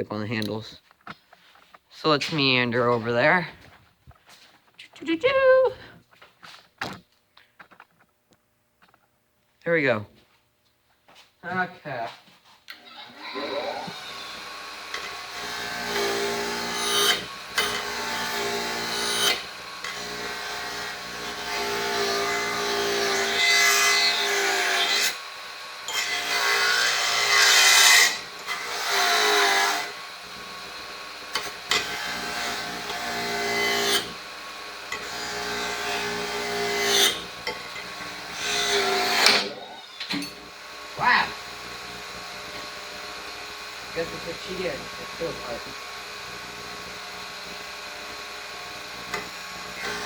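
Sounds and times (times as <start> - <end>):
wire wheel motor running: 12.8 - 50.0.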